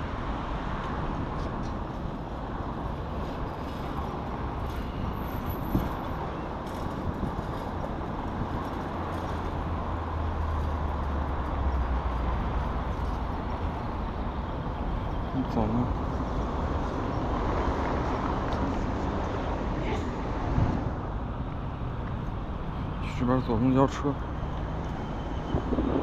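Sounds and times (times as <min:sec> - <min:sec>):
hum of passing vehicles: 0:00.0 - 0:26.0.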